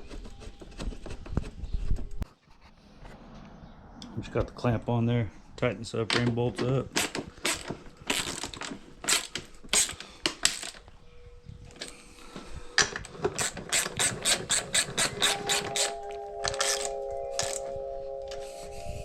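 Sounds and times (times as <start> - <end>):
socket ratchet clicking: 13.0 - 16.0.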